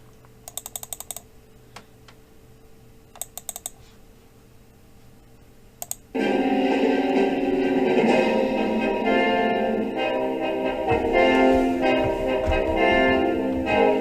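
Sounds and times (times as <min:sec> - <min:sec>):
keyboard keys tapping: 0:00.5 - 0:01.2, 0:03.2 - 0:03.8
music playing: 0:06.2 - 0:14.0.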